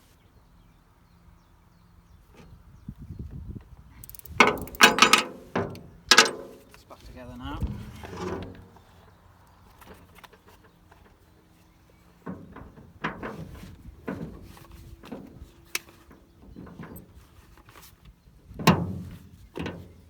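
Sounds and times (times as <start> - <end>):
spanners clicking on a nut: 4.0 - 6.6.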